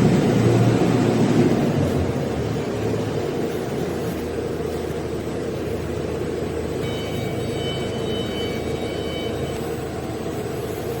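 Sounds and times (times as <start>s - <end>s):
faint high whine: 3.5s - 11.0s.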